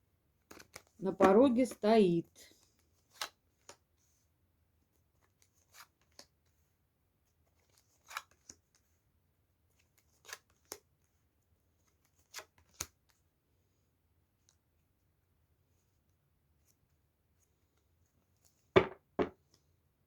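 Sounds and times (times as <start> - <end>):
cards rustling: 0.5 - 2.0.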